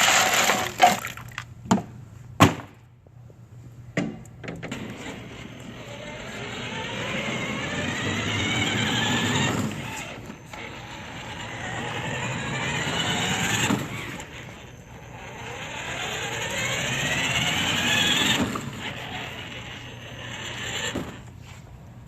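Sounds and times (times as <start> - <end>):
electric motors whining up: 4.6 - 21.4.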